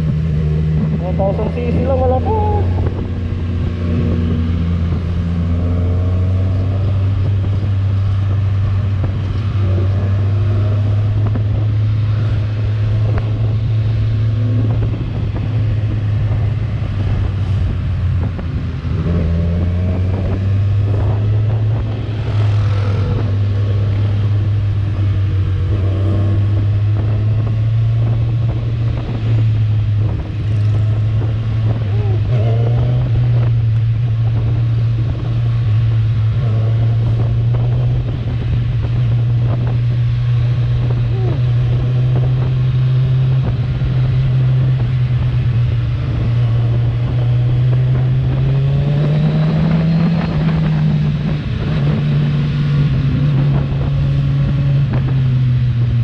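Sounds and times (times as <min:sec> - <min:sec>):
motorcycle engine droning: 0:00.0 - 0:56.0.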